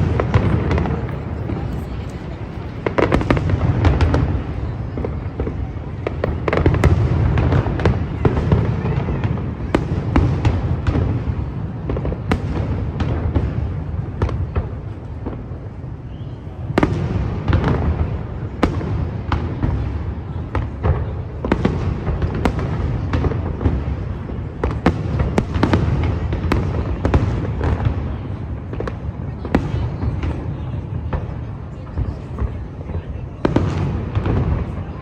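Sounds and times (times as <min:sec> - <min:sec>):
firework shell bursts and crackles: 0:00.0 - 0:35.0.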